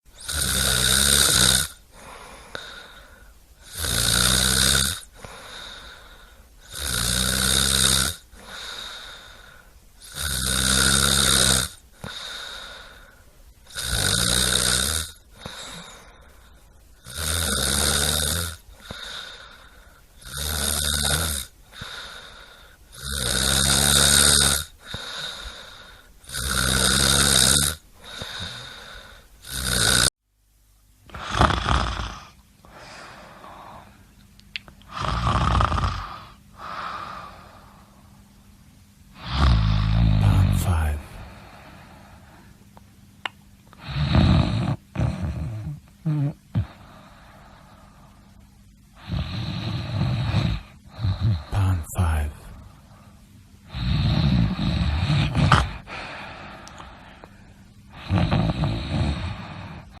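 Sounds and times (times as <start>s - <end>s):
person snoring loudly: 0.2s - 2.9s, 3.6s - 5.9s, 6.6s - 9.3s, 10.0s - 12.9s, 13.7s - 16.1s, 17.0s - 19.6s, 20.2s - 30.1s, 31.1s - 33.9s, 34.9s - 37.6s, 39.2s - 42.0s, 43.8s - 47.0s, 49.0s - 52.6s, 53.7s - 56.8s, 57.9s - 60.0s
quiet breaths: 0.2s - 29.6s, 31.0s - 42.9s, 43.7s - 60.0s.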